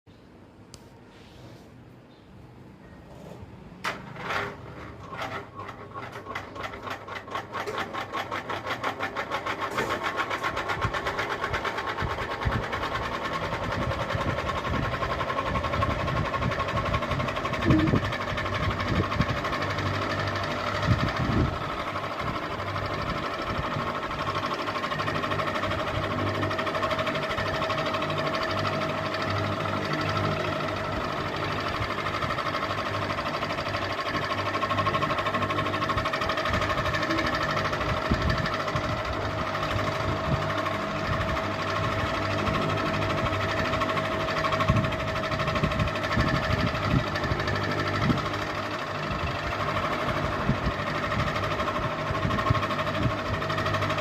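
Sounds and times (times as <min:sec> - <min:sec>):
ceiling fan clicking and humming: 0:00.1 - 0:54.0.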